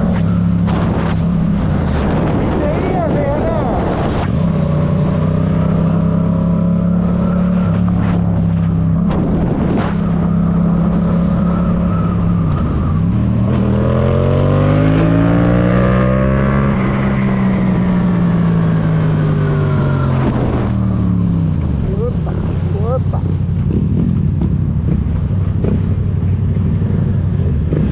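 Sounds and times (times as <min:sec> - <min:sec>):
motorcycle engine running: 0:17.8 - 0:27.9.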